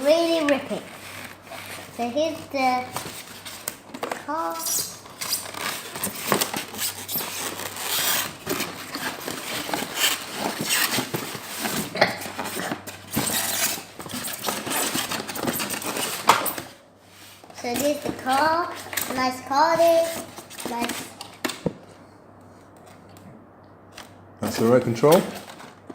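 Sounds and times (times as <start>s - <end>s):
packaging rustling and crackling: 0.2s - 16.8s.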